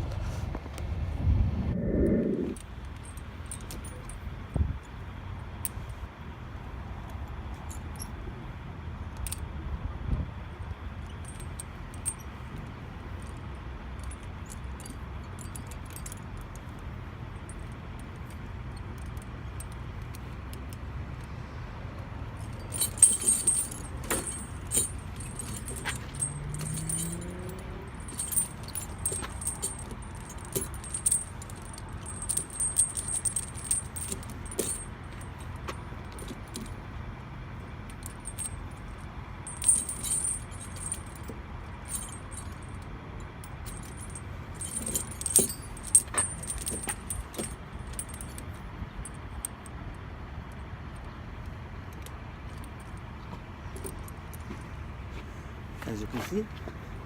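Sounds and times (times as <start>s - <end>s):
steady low rumble: 0.0s - 4.9s, 22.2s - 36.8s, 37.6s - 49.4s
steel chain clinking and rattling: 2.6s - 4.4s, 11.0s - 20.6s, 22.3s - 37.0s, 37.8s - 49.8s, 53.7s - 54.5s.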